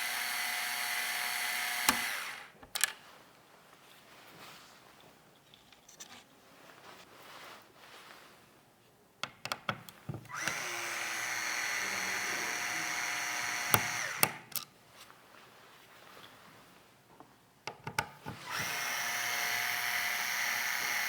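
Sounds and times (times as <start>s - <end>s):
electric screwdriver motor whine: 0.0s - 2.6s, 10.3s - 14.5s, 18.4s - 21.0s.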